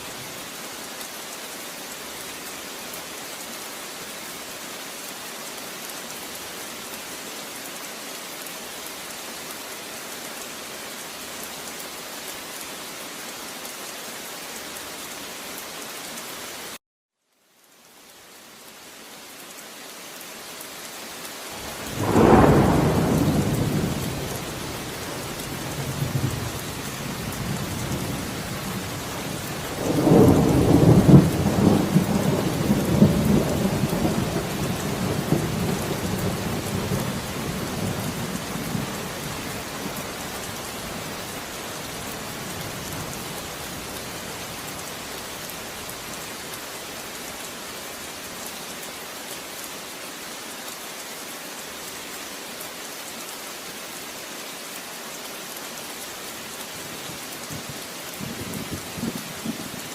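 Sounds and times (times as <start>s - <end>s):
steady rainfall: 0.0s - 59.9s
thunder rolling: 21.7s - 24.6s.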